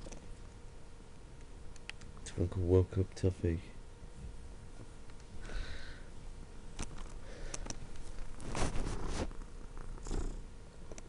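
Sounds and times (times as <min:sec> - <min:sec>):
small clicks: 0:01.4 - 0:02.1
soft rustling: 0:07.8 - 0:09.5.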